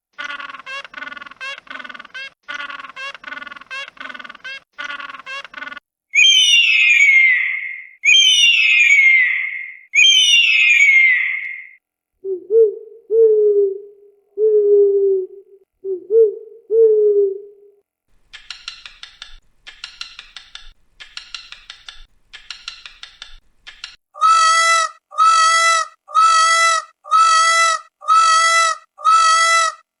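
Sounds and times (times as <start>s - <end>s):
animal chattering: 0.1s - 11.8s
pitched animal calls: 0.1s - 11.8s, 24.2s - 29.9s.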